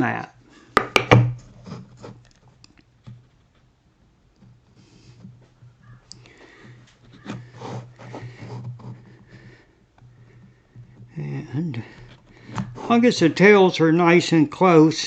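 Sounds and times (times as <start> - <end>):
square knocking on board: 0.8 - 1.4
pencil scratching on wood: 7.1 - 9.5.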